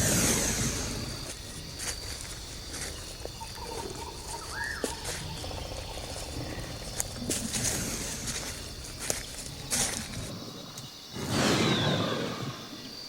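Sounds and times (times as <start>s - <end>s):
insects high tone: 0.0s - 13.0s
bird calling: 2.8s - 9.7s.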